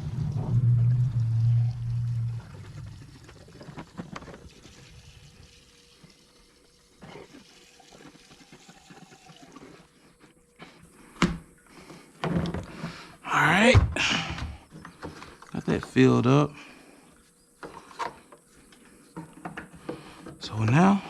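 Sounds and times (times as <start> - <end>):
loud low hum: 0.0 - 3.3
fuel trickling into tank: 0.0 - 10.8.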